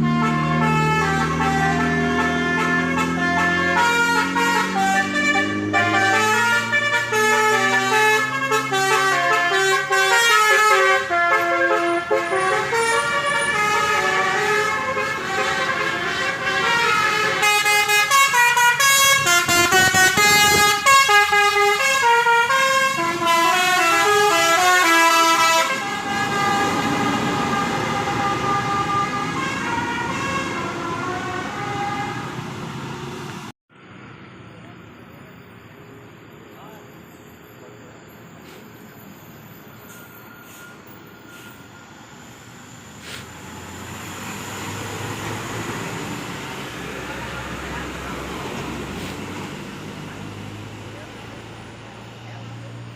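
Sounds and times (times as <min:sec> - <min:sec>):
bus horn playing a melody: 0:00.0 - 0:32.6.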